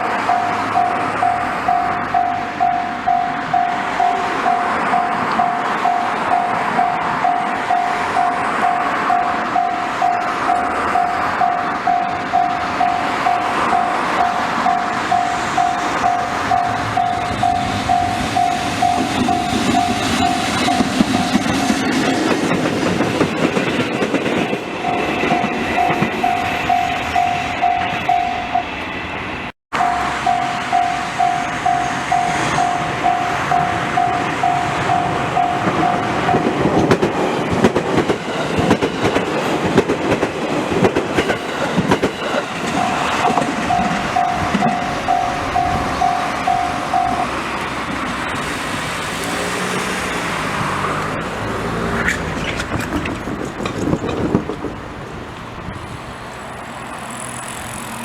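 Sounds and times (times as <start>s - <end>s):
train clickety-clack: 0.0s - 58.0s
level crossing bell dinging: 29.8s - 36.5s, 41.8s - 47.4s.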